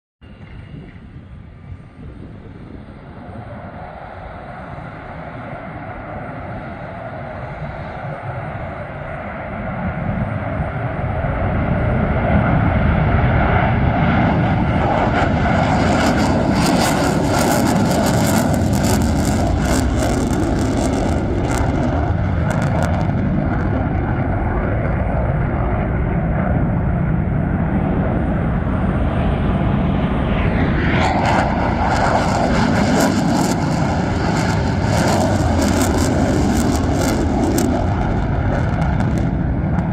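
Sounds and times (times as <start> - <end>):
fighter jets taking off: 0.2 - 39.9
jet engine crackling: 11.6 - 39.9.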